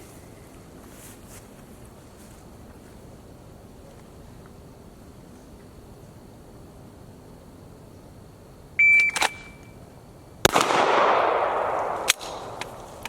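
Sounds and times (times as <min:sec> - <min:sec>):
shot timer beep: 0:08.8 - 0:09.8
sharp click: 0:08.9 - 0:09.7
handgun shot: 0:10.4 - 0:13.0.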